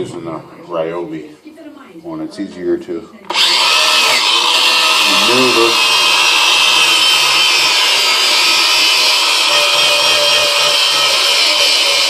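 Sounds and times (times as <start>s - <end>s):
angle grinder on steel blade: 3.3s - 12.0s.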